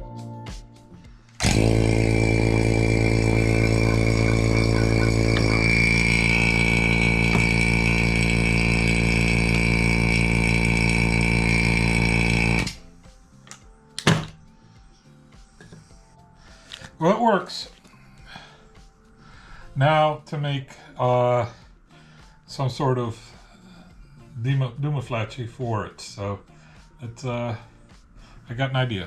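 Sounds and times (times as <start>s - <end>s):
vacuum pump humming and whining: 1.4s - 12.9s.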